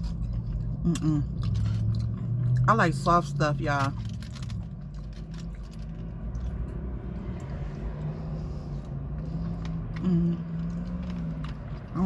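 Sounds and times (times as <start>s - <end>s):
person humming: 10.0s - 10.5s.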